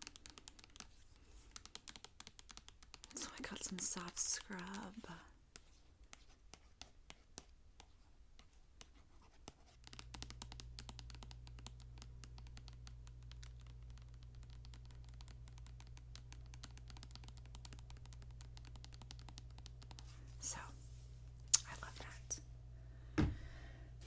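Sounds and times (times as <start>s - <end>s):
low steady hum: 9.2s - 24.0s.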